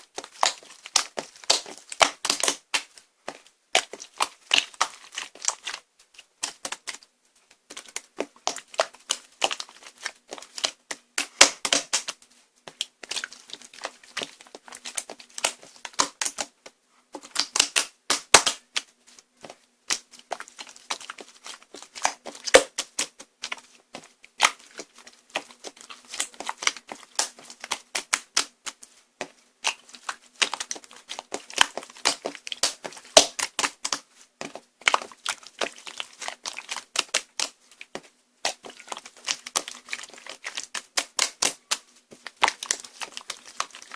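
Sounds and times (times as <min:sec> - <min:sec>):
slime squished by hand: 0:00.1 - 0:07.0, 0:19.9 - 0:43.9.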